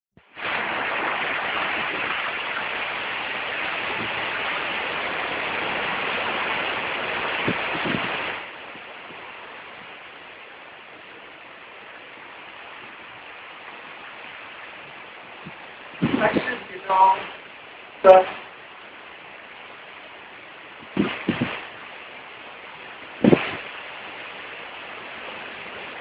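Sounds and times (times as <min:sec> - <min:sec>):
rain and wind rushing: 0:00.2 - 0:26.0.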